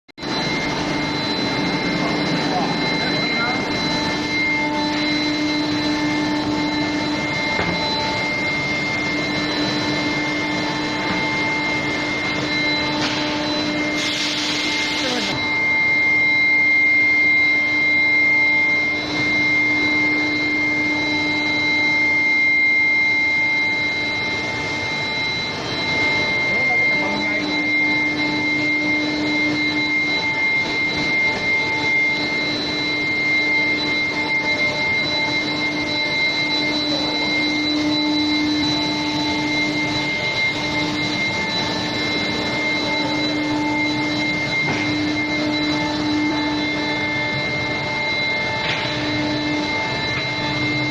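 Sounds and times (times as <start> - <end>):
machinery noise: 0.2 - 17.8, 23.9 - 50.9
high-pitched electrical whine: 0.2 - 50.9.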